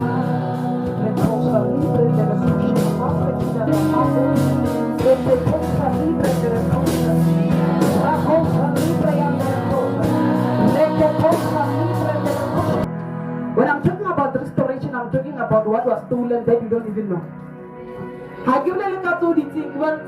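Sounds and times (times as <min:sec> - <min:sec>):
person singing: 0:00.0 - 0:02.8, 0:07.2 - 0:12.9
held keyboard chords: 0:00.0 - 0:20.0
steady drum beat: 0:00.4 - 0:12.9.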